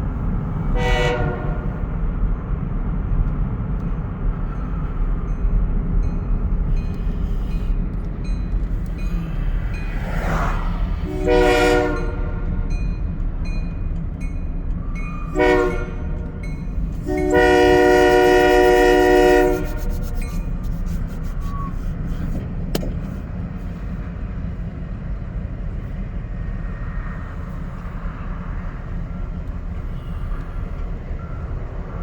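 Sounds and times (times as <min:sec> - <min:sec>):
locomotive air horn blasts: 0:00.6 - 0:01.9, 0:11.0 - 0:12.8, 0:15.2 - 0:22.2.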